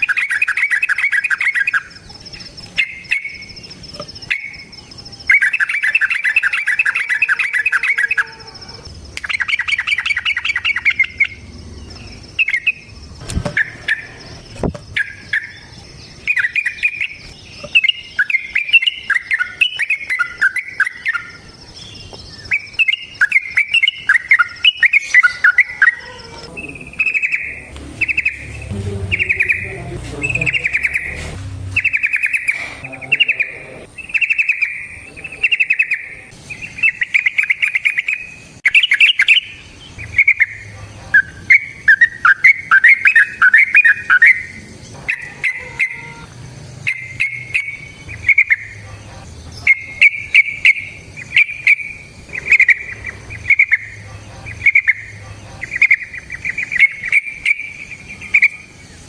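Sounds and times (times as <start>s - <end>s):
bird singing trills and chatter: 0.0s - 59.0s
high insect-like whine: 0.0s - 59.0s.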